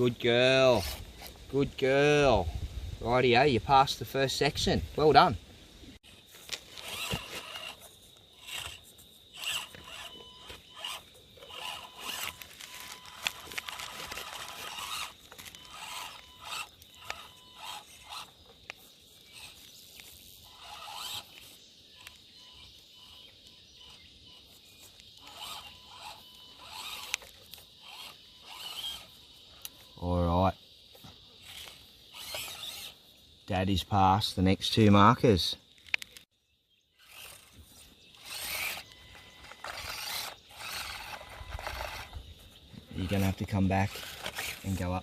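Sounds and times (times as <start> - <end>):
small electric motors whirring: 0.0 - 1.6, 6.0 - 33.2, 36.9 - 45.0.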